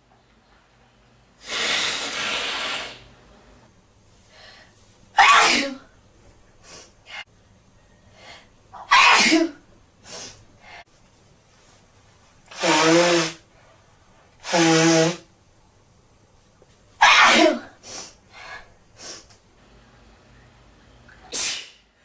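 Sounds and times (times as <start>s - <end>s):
person blowing nose: 1.4s - 3.1s, 12.5s - 13.5s, 14.4s - 15.3s
person sneezing: 5.2s - 5.8s, 8.8s - 9.6s, 17.0s - 18.1s, 21.3s - 21.8s.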